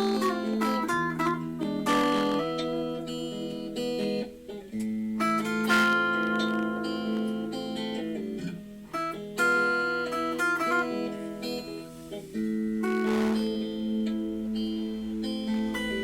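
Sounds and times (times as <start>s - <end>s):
acoustic guitar playing blues: 0.0s - 16.0s
strummed guitar chords: 0.0s - 16.0s.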